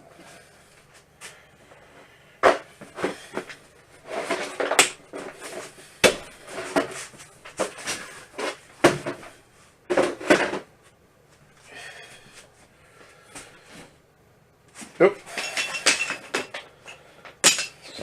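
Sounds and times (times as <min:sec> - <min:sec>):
hard objects knocking and clattering: 0:04.2 - 0:09.3, 0:15.3 - 0:17.9.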